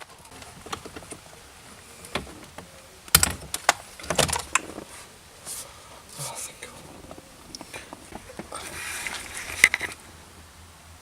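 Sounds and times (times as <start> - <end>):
sharp clicks and knocks: 2.0 - 4.9.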